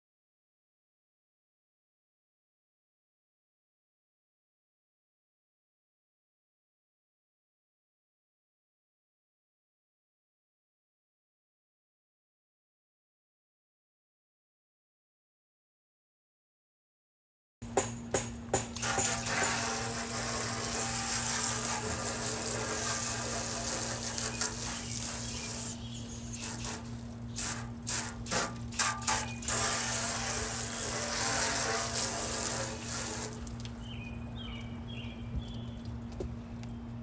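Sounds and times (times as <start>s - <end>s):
steady low hum: 17.6s - 37.0s
scrubbing a porcelain sink: 18.8s - 33.6s.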